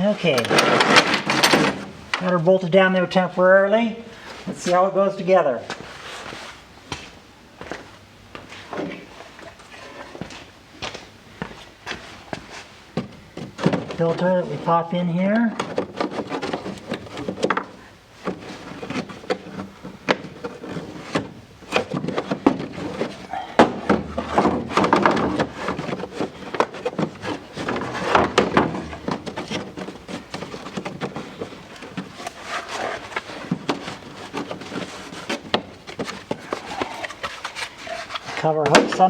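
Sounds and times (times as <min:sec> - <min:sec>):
plastic parts clicking and knocking: 0:15.6 - 0:39.0.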